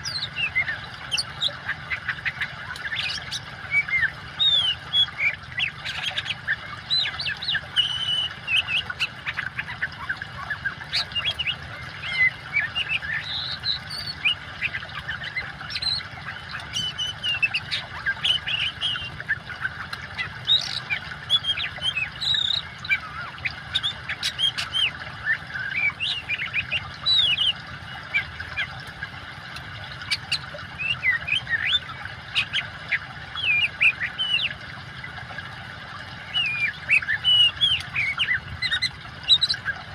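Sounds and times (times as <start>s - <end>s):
running water: 0.0s - 39.9s
bird singing whistles and chirps: 2.8s - 9.7s, 20.2s - 27.6s, 36.3s - 39.6s.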